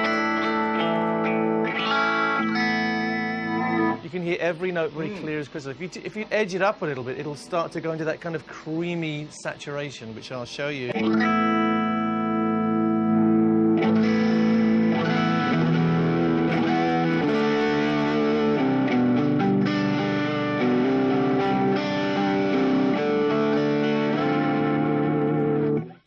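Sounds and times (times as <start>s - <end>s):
electric guitar chords through amp: 0.0s - 4.1s, 10.9s - 26.0s.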